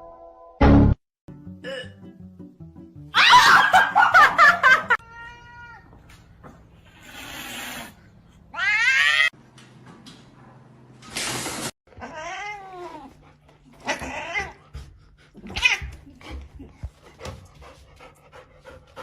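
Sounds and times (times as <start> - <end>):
cats meowing and yowling: 5.0 - 5.9, 8.5 - 9.3, 12.0 - 13.1, 13.8 - 14.6.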